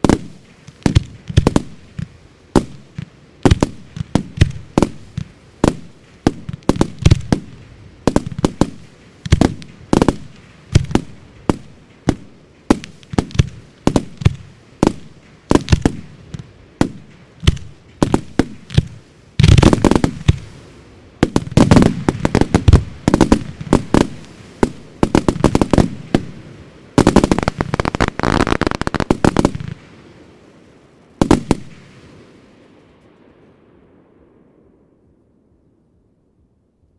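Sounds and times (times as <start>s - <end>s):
fireworks bursting: 0.0s - 34.1s
rapid firework reports: 2.6s - 30.6s.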